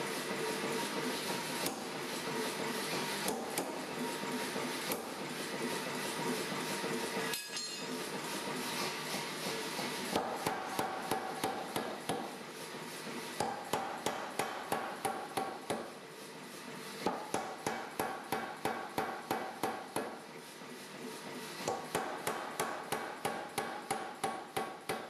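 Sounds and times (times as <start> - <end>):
hammer striking steel on anvil: 7.2 - 8.1, 10.2 - 12.3, 13.4 - 15.9, 17.1 - 20.2, 21.7 - 25.0.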